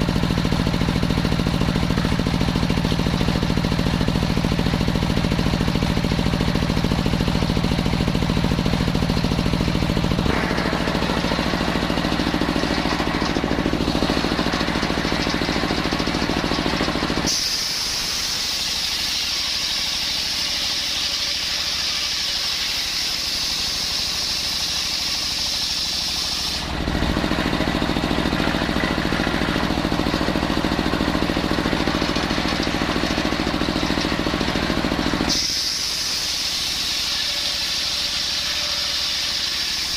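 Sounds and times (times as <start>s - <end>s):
engine-driven circular saw: 0.0s - 39.9s
loud high hiss: 35.2s - 39.9s.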